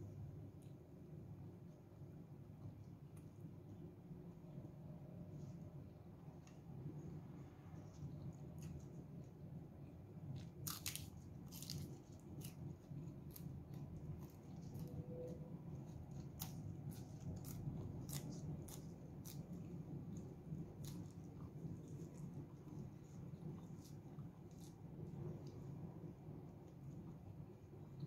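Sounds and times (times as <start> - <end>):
low steady hum: 0.0 - 28.0
chewing crisp leafy greens: 7.4 - 28.0.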